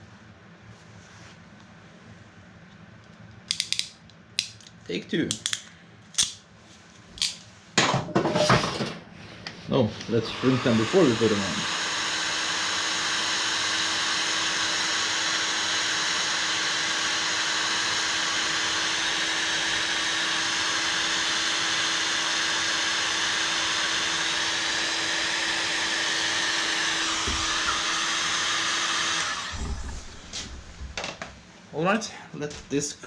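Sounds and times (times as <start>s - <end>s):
heat gun blowing with motor hum: 10.1s - 30.7s.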